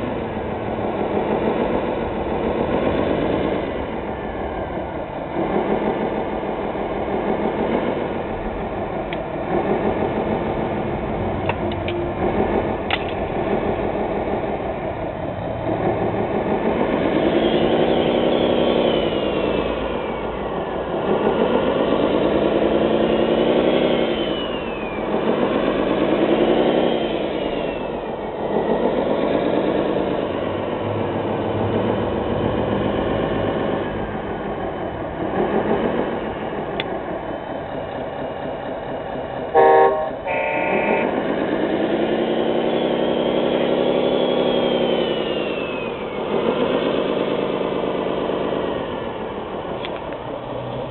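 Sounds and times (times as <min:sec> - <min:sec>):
model machine engine revving: 0:15.6 - 0:34.5, 0:39.6 - 0:49.8.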